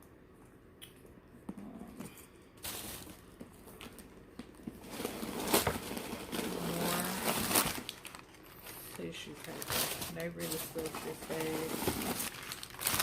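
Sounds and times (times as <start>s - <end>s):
tissue paper rustling: 2.6s - 3.3s, 4.8s - 13.0s.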